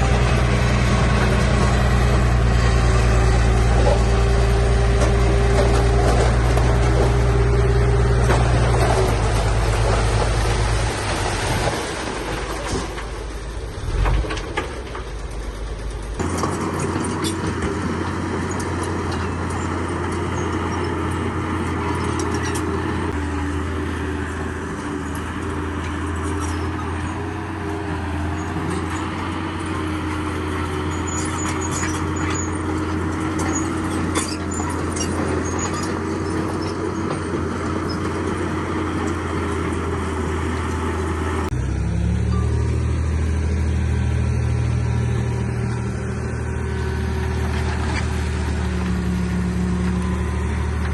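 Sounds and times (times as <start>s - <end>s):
diesel construction machinery engine: 0.0s - 50.9s.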